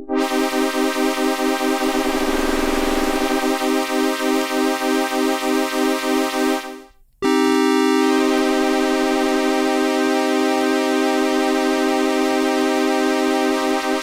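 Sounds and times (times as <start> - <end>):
pulsing synthesizer note: 1.2 - 3.7.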